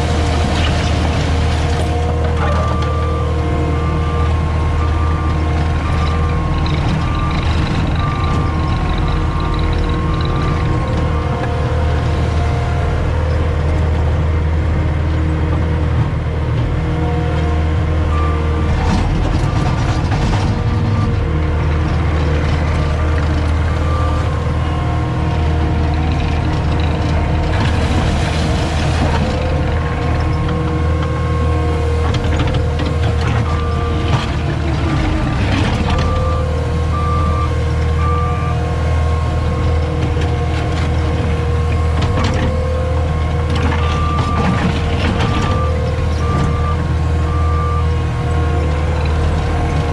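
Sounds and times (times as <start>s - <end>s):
diesel engine under load: 0.0s - 49.9s
reversing alarm beeping: 1.9s - 12.1s, 22.3s - 25.8s, 33.1s - 35.2s, 35.8s - 40.0s, 42.5s - 48.0s.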